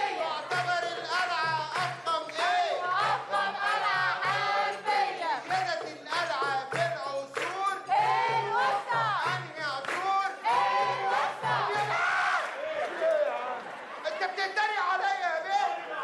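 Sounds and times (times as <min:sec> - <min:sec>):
voices singing: 0:00.0 - 0:12.6.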